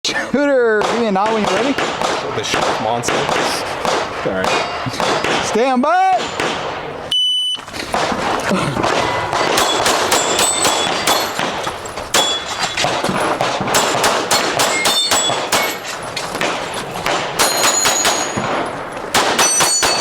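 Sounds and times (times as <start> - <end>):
pistol shots: 0.8 - 7.0, 7.9 - 20.0
metallic ring of steel targets: 4.4 - 5.6, 9.5 - 16.2, 17.4 - 20.0.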